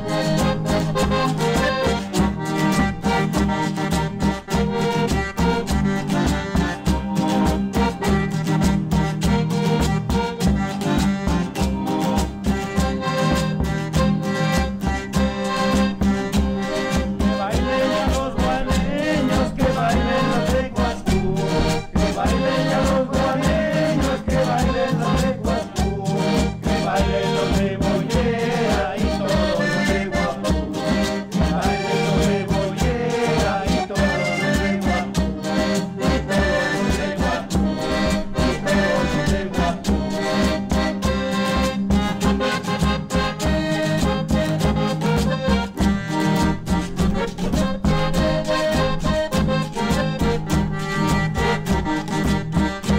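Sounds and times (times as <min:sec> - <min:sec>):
instrumental dance music ensemble: 0:00.0 - 0:29.0, 0:34.6 - 0:52.9
steady bass beat: 0:12.5 - 0:52.9.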